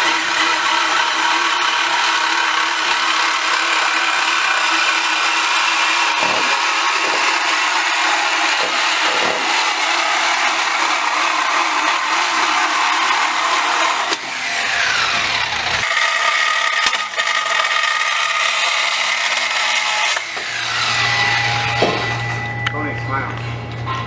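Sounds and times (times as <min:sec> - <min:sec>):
power tool motor whine: 0:00.0 - 0:22.7
short knocks: 0:06.2 - 0:09.7.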